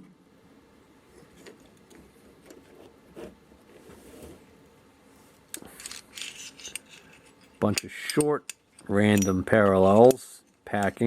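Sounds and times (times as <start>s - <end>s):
light metal clicks and clinks: 6.6s - 11.0s.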